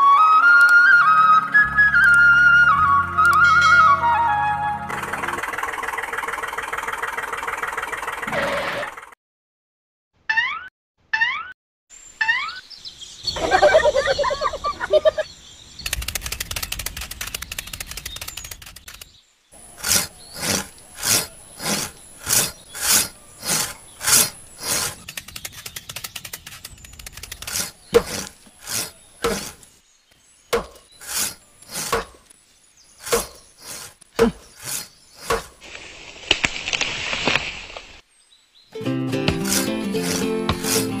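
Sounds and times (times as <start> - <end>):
saw rasping through wood: 19.6 - 25.1, 27.3 - 29.7, 30.6 - 32.2, 33.0 - 35.6, 39.2 - 41.0.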